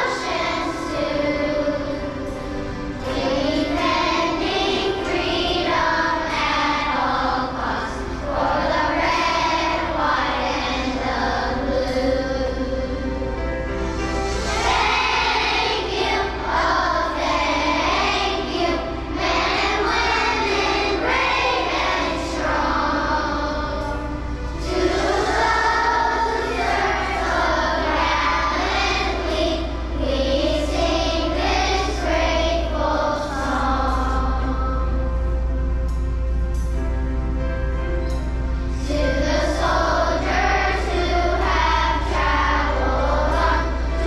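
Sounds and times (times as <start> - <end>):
children's choir singing: 0.0 - 44.0
steady low hum: 0.0 - 44.0.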